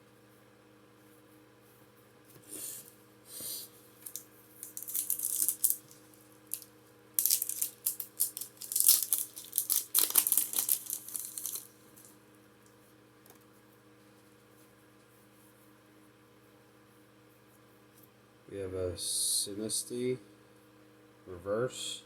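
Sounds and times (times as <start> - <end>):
foil wrapper crinkling and tearing: 4.0 - 12.1.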